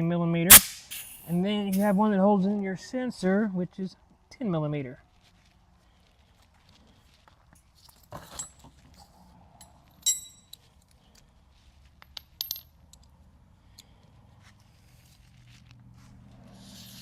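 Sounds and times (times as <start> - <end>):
metal hand tools clinking: 9.6 - 10.6, 12.0 - 12.7.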